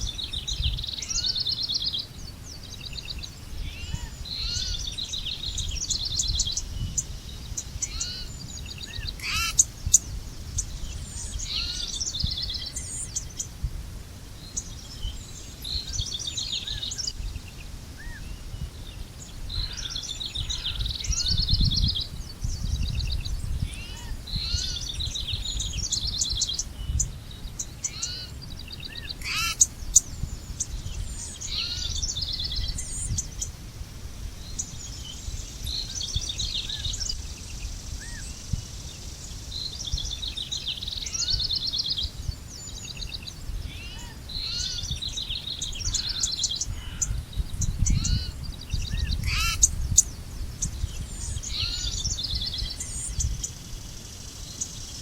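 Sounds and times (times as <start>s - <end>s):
songbirds chirping and trilling: 0.0s - 55.0s.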